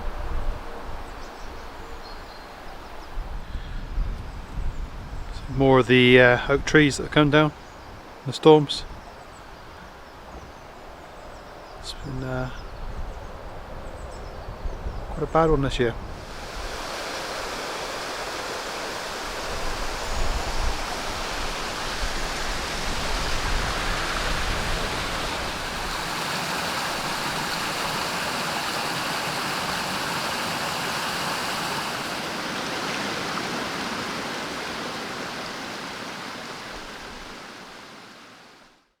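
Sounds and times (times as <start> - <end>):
running water: 16.2 - 38.8.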